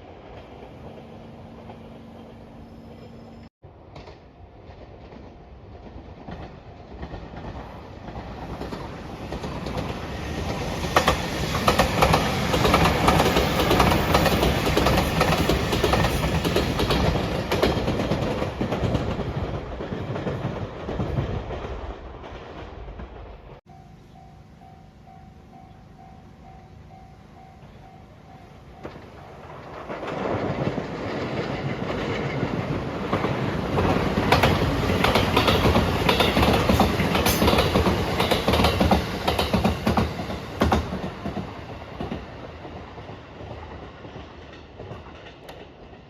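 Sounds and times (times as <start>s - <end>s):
train passing rumble: 0.0s - 46.0s
wheels clattering over rail joints: 28.8s - 45.8s.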